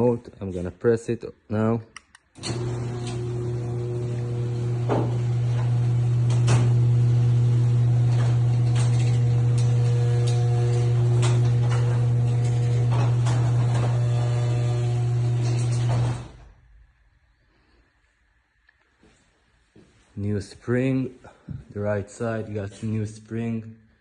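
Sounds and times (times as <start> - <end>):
garage door motor hum: 2.4 - 16.8
door clicking and rattling: 4.3 - 16.4.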